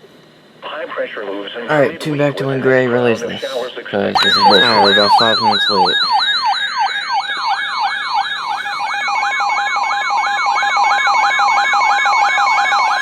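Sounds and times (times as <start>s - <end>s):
electronic siren sweeping: 4.2s - 13.0s
steady alarm tone: 4.2s - 13.0s.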